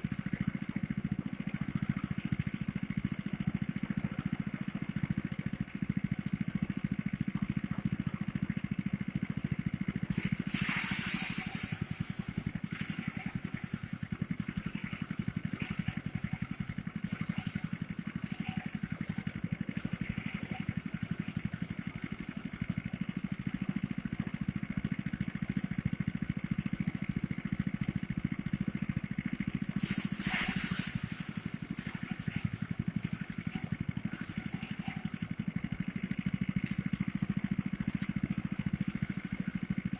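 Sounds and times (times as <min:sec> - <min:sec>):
thresher engine humming: 0:00.0 - 0:39.9
loud hissing rush: 0:10.1 - 0:11.8, 0:29.8 - 0:31.3.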